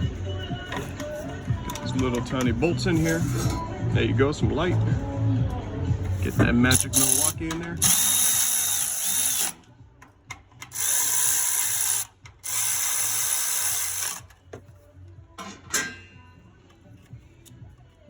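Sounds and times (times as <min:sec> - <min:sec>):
metal clicks: 0:00.7 - 0:02.6
power tool spinning: 0:06.2 - 0:09.7, 0:10.6 - 0:14.4.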